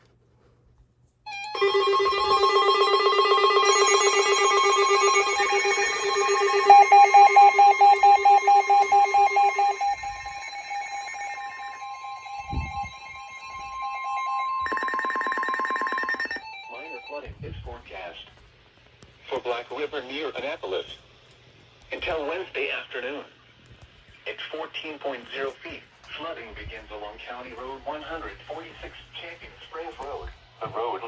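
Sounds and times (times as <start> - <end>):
buzzing tone: 1.3 - 16.5
electronic alert tones: 1.3 - 17.2.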